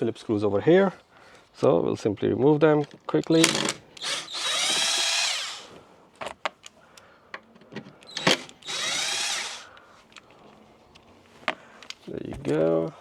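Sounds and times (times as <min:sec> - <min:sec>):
power screwdriver motor whining: 0:03.3 - 0:05.8, 0:08.0 - 0:09.7.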